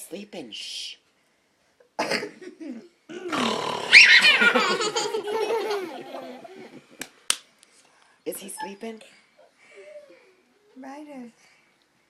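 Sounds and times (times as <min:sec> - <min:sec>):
young child laughing: 0:03.9 - 0:06.8.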